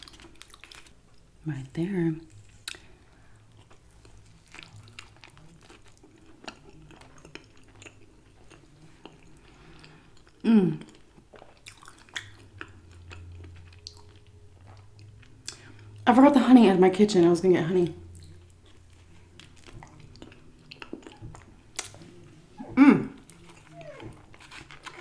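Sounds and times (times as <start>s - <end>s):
person chewing food: 0.0s - 1.3s, 2.3s - 16.0s, 18.0s - 25.0s
short hummed vocal sound: 22.6s - 24.0s.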